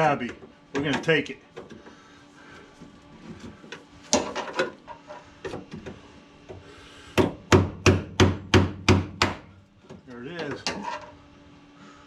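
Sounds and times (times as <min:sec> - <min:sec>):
hammer strikes: 0:07.2 - 0:09.5
hand tools on sheet metal: 0:10.4 - 0:11.2.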